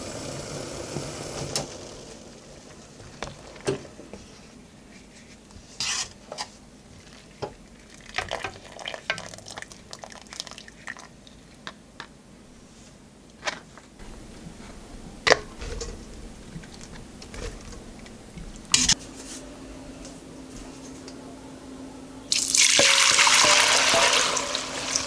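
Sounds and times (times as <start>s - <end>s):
steady hiss: 0.0s - 4.6s
metal utensils clinking on pots: 22.3s - 25.0s.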